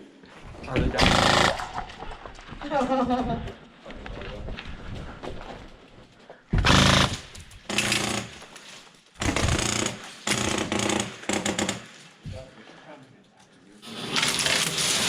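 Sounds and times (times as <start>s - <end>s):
airsoft rifle full-auto bursts: 1.0s - 1.7s, 6.6s - 8.4s, 9.2s - 11.9s.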